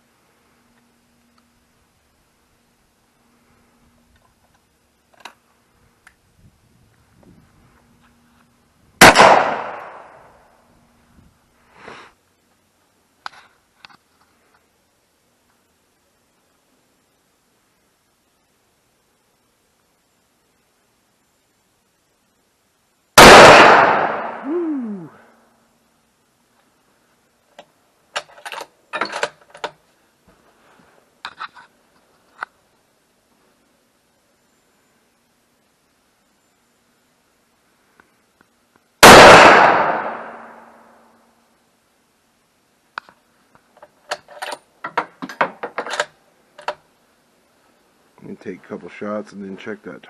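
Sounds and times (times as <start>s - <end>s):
shotgun blast with echo: 9.0s - 10.1s, 23.2s - 24.5s, 39.0s - 40.6s
small metallic clicks: 27.5s - 29.8s, 43.0s - 46.9s.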